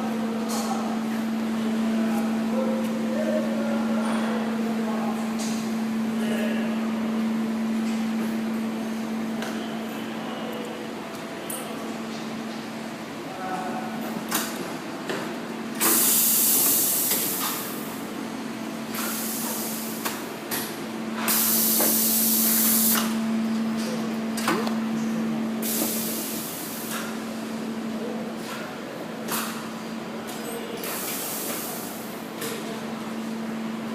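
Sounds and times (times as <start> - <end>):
air hiss bursts: 15.8 - 17.7, 21.3 - 23.1, 25.6 - 26.9.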